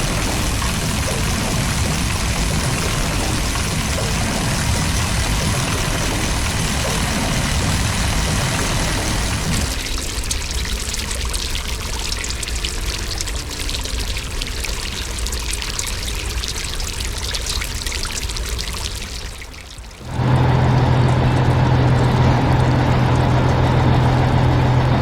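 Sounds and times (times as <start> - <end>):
heavy machine engine humming: 0.0 - 10.0, 19.9 - 25.0
rushing crackling noise: 0.0 - 16.0, 19.8 - 25.0.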